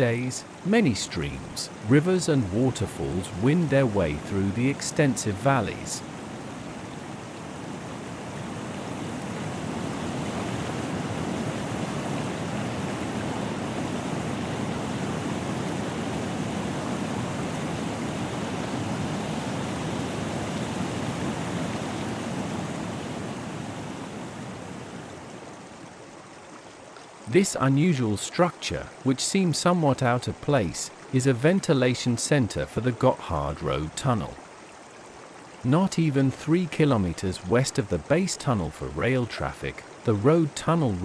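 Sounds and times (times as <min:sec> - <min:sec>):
stream water flowing: 0:00.0 - 0:41.0.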